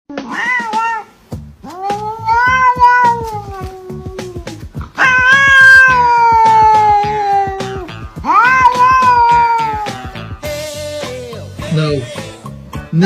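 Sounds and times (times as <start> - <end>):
cat meowing: 0.1 - 10.4
music with steady beat: 0.6 - 13.0.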